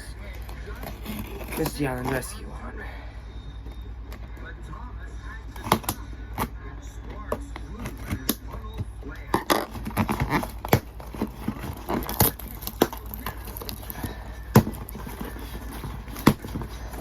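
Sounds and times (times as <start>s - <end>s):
packaging rustling and crinkling: 9.4s - 17.0s.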